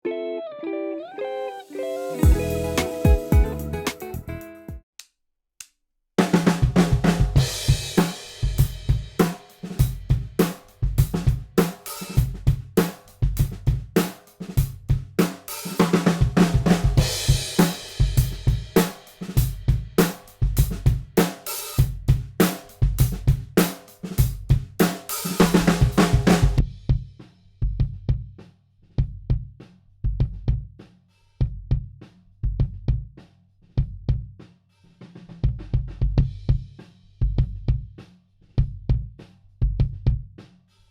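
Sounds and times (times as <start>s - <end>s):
drum kit playing a groove: 1.7s - 4.8s, 6.2s - 28.4s, 35.0s - 40.5s.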